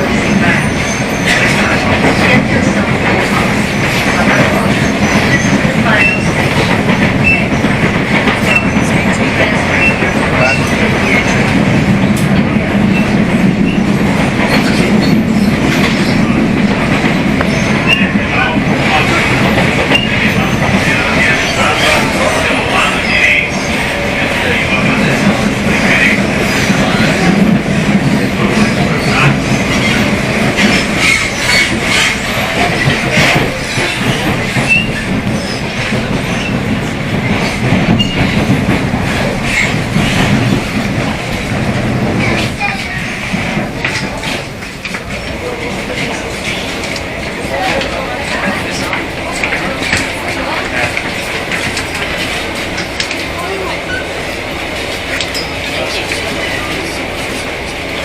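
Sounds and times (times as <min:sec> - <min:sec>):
high wheel squeaks: 0:00.0 - 0:02.4, 0:03.6 - 0:07.7, 0:08.4 - 0:11.4, 0:17.2 - 0:27.4, 0:28.6 - 0:36.7, 0:37.4 - 0:38.6, 0:55.1 - 0:56.9
train wheels rumbling on track: 0:00.0 - 0:58.0.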